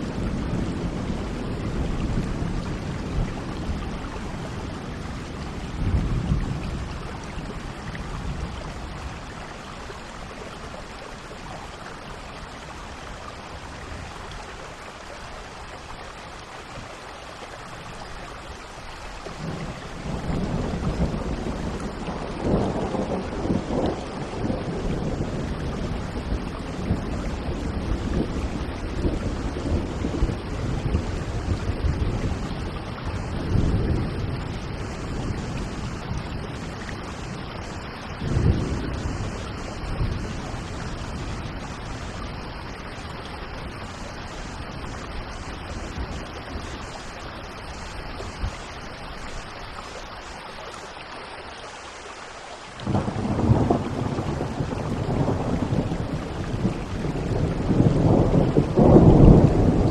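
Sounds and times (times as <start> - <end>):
thunder rumbling: 0.0 - 9.2, 19.4 - 48.6, 52.8 - 59.9
steady rain: 0.0 - 59.9.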